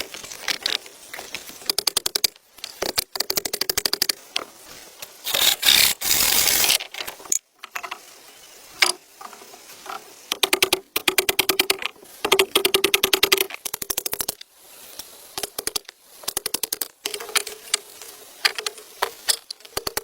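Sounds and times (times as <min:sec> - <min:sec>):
rapid sharp clicks: 0:05.2 - 0:06.8.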